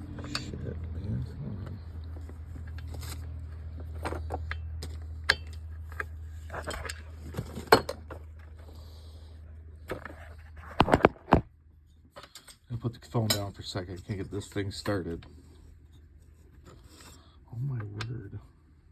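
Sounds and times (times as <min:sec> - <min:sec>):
steady low hum: 0:00.0 - 0:18.9
small metallic clinks and knocks: 0:02.0 - 0:08.2, 0:12.0 - 0:13.8.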